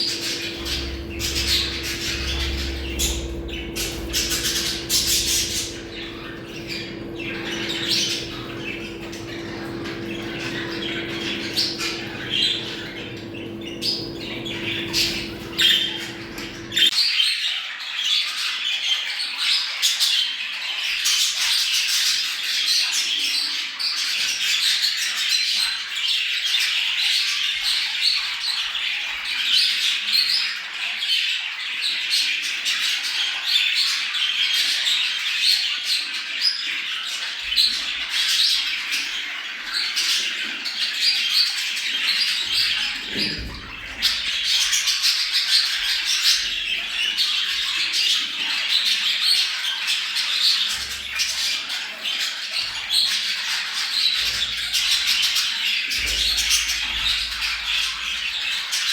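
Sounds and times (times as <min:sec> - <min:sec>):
budgerigars chattering and squawking: 0:00.0 - 0:16.9.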